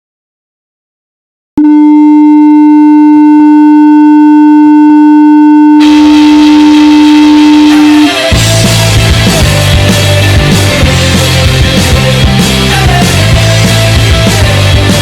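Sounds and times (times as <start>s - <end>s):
goal horn blast: 1.6s - 8.5s.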